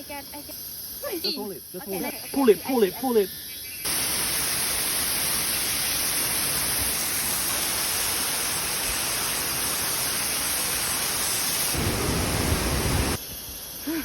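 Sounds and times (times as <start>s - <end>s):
waterfall rushing hiss: 3.8s - 14.0s.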